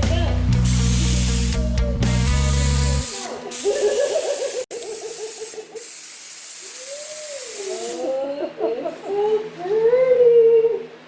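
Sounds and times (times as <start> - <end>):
paint spray gun hissing: 0.6 - 8.2.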